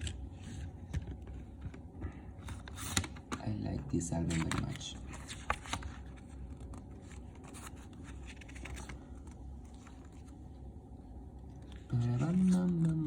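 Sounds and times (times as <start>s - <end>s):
low steady hum: 0.0s - 13.0s
plastic and paper handling clicks: 4.2s - 10.3s, 11.7s - 13.0s.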